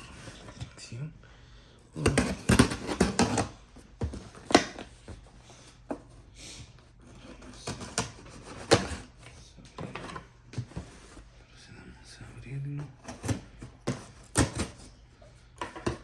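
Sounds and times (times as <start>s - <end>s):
cardboard package knocks and rustles: 2.0s - 5.3s, 13.1s - 14.9s.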